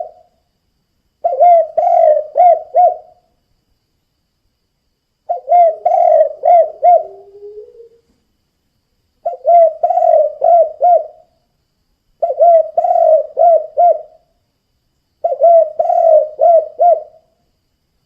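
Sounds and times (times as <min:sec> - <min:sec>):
dove cooing: 0:00.0 - 0:00.2, 0:01.2 - 0:03.2, 0:05.3 - 0:08.1, 0:09.2 - 0:11.3, 0:12.2 - 0:14.2, 0:15.2 - 0:17.3.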